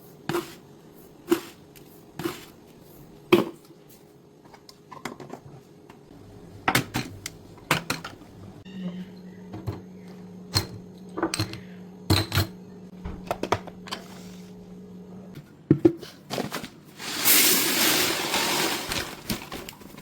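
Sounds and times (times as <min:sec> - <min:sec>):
steady low hum: 0:05.9 - 0:15.8.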